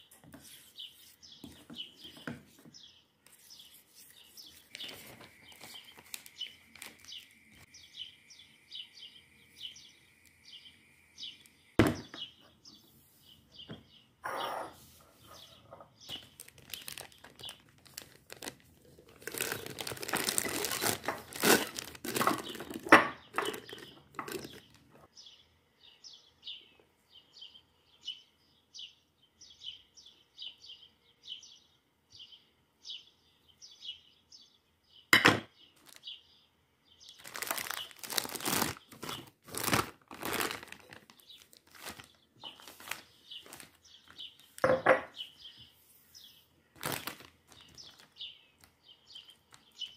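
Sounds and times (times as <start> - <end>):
bird chirping: 0.0 - 18.6, 19.2 - 49.9
crinkling and rustling: 0.2 - 7.8, 13.2 - 25.1, 35.8 - 36.2, 37.0 - 45.5, 46.2 - 49.9.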